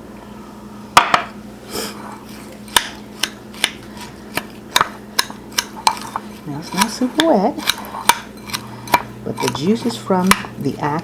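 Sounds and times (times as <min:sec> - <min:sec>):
utensil clinking against bowl: 0:04.8 - 0:11.0.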